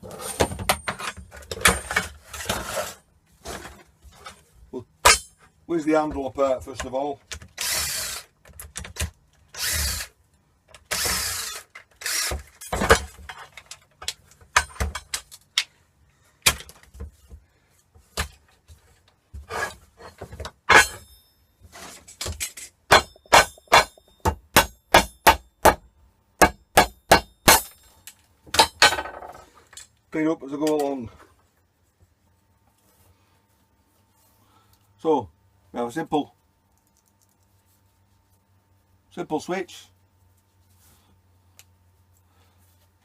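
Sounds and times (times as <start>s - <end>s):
tools scraping and prying plastic: 0.0s - 5.6s, 6.2s - 9.9s, 10.6s - 15.8s, 21.7s - 25.8s.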